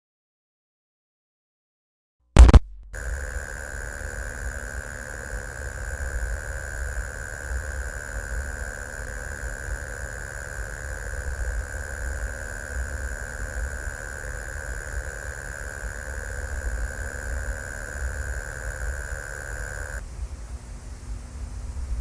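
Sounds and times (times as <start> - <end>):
burst of static: 2.4 - 20.0
electronic hiss: 2.4 - 20.0
high whine: 2.4 - 20.0.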